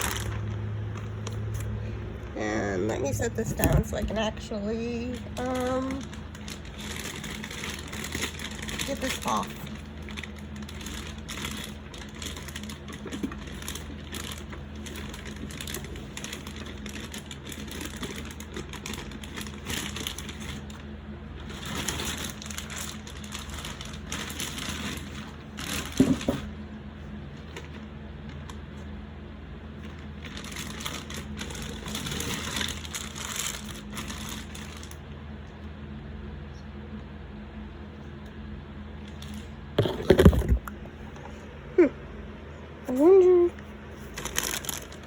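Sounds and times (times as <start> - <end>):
packaging rustling and crinkling: 0.0 - 1.9, 5.0 - 28.9, 29.7 - 35.0, 39.0 - 41.3, 43.8 - 45.0.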